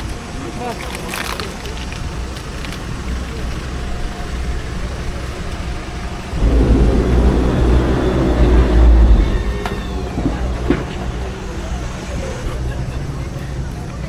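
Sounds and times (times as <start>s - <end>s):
engine rumbling: 3.4s - 13.8s.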